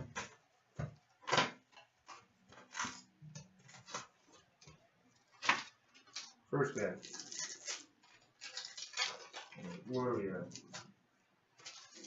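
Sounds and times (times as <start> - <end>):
cardboard and wrapping rustling: 5.2 - 10.9, 11.6 - 12.0.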